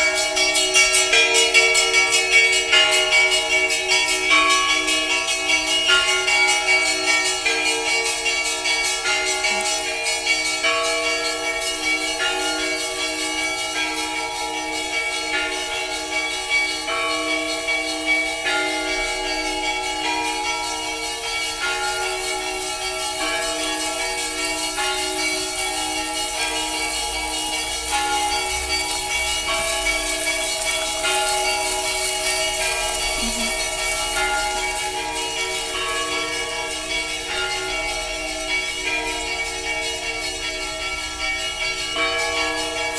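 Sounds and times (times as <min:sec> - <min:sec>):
church bells ringing: 0:00.0 - 0:42.9.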